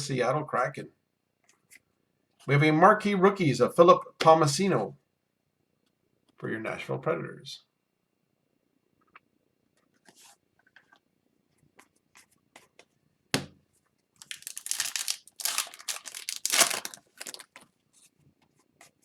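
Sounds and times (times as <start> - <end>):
foil wrapper tearing and crinkling: 14.2 - 17.6.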